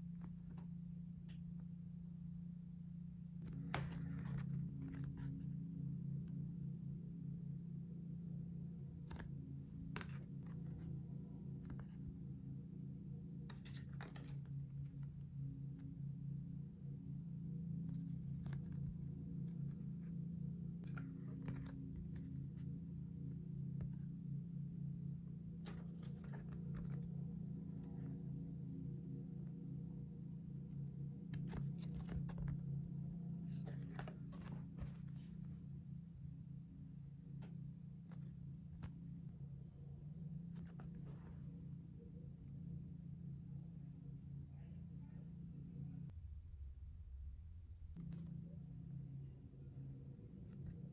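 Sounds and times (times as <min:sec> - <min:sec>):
steady low hum: 0:00.0 - 0:50.9
paper packaging rustling: 0:33.5 - 0:35.3.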